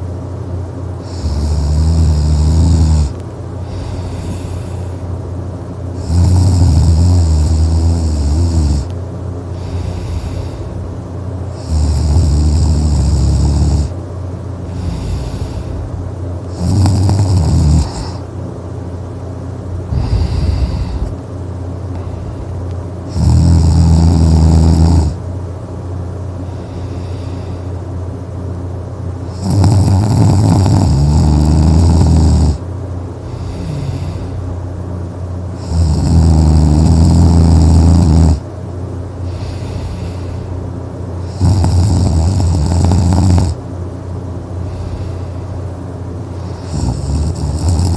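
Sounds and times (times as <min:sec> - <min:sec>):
person snoring: 0:01.0 - 0:05.0, 0:06.0 - 0:08.9, 0:09.5 - 0:10.8, 0:11.6 - 0:14.0, 0:14.7 - 0:15.9, 0:16.5 - 0:18.3, 0:19.9 - 0:21.2, 0:23.1 - 0:25.2, 0:26.4 - 0:27.7, 0:29.3 - 0:32.6, 0:33.2 - 0:34.4, 0:35.6 - 0:38.4, 0:39.2 - 0:40.5, 0:41.2 - 0:43.6, 0:44.6 - 0:45.5, 0:46.4 - 0:47.9
soft breaths: 0:03.1 - 0:05.1, 0:06.1 - 0:10.9, 0:14.6 - 0:16.1, 0:19.8 - 0:22.8, 0:26.4 - 0:28.0, 0:33.2 - 0:34.6, 0:39.2 - 0:43.5, 0:44.6 - 0:47.3.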